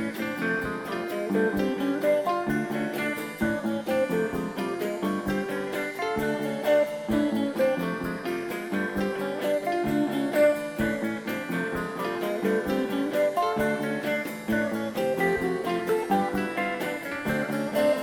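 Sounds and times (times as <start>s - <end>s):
plucked guitar tune: 0.0s - 18.0s.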